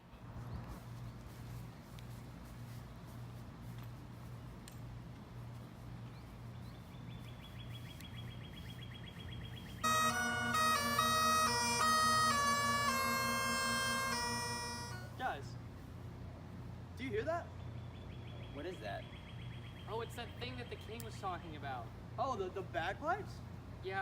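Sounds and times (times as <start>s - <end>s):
bagpipe music: 9.8s - 15.2s.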